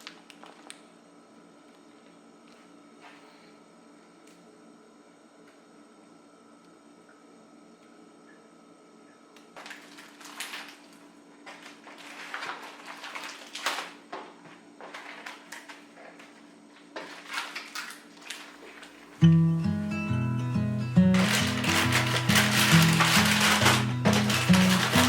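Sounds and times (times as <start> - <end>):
faint steady hum: 0.0 - 25.0
objects rustling and knocking: 9.6 - 19.2, 21.2 - 25.0
background music: 19.2 - 25.0.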